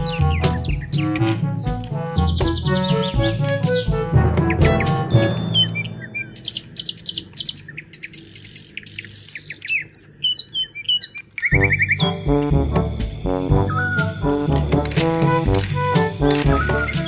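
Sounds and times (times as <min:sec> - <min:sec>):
pitched music: 0:00.0 - 0:06.7, 0:11.6 - 0:17.0
birds chirping: 0:00.0 - 0:17.0.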